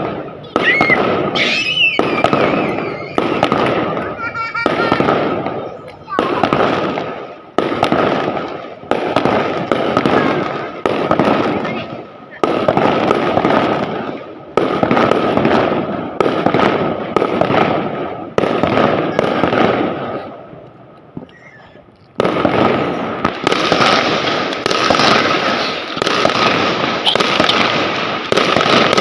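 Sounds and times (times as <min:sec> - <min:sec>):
fireworks banging and crackling: 0:00.0 - 0:29.0.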